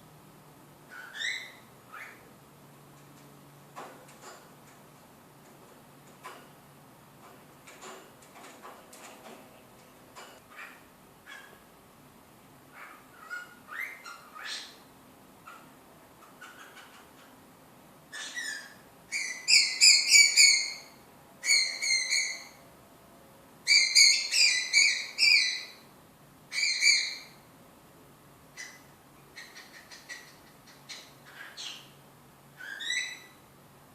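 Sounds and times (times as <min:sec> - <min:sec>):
cockatiel chirping and calling: 0:00.9 - 0:02.2, 0:12.8 - 0:14.8, 0:15.4 - 0:17.3, 0:18.1 - 0:22.6, 0:23.7 - 0:25.8, 0:26.5 - 0:27.4, 0:28.6 - 0:32.0, 0:32.6 - 0:33.4.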